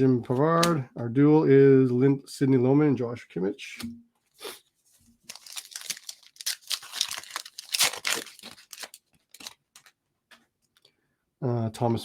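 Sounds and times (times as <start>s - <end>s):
wrapper tearing and crinkling: 5.2s - 10.0s.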